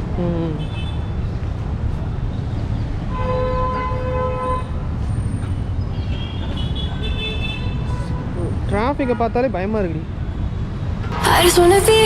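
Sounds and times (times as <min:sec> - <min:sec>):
low rumble of engines: 0:00.0 - 0:12.0
vehicle horns honking: 0:03.1 - 0:04.8, 0:06.1 - 0:08.3.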